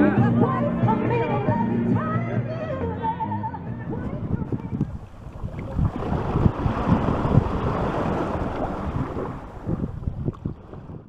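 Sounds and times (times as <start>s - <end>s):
wind buffeting microphone: 3.7s - 11.0s.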